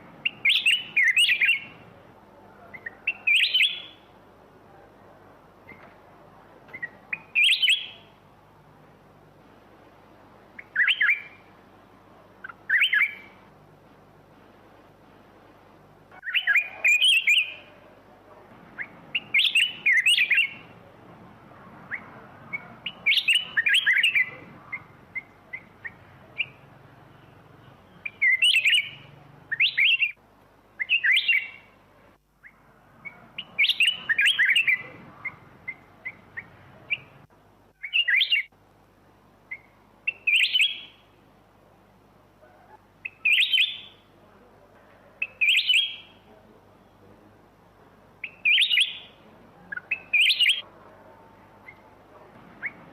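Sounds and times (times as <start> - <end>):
bird chirps: 0.2 - 2.0, 2.6 - 4.1, 6.7 - 8.2, 10.5 - 11.5, 12.4 - 13.4, 16.1 - 17.9, 18.7 - 20.8, 21.6 - 30.2, 30.8 - 31.8, 32.4 - 38.5, 39.5 - 41.2, 42.4 - 44.1, 45.1 - 46.4, 48.2 - 50.7, 51.6 - 52.9
bird warbling: 21.9 - 26.6.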